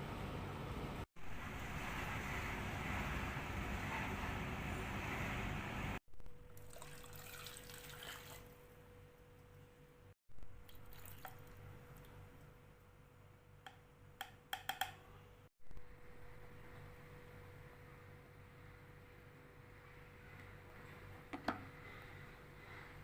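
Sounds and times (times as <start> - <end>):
faint steady hum: 0.0 - 23.0
liquid pouring or dripping: 6.5 - 8.6, 10.6 - 12.3.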